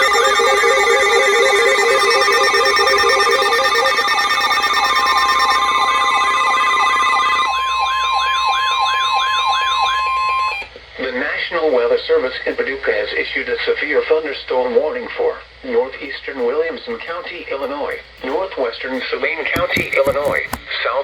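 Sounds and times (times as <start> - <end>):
siren wailing: 0.0 - 10.7.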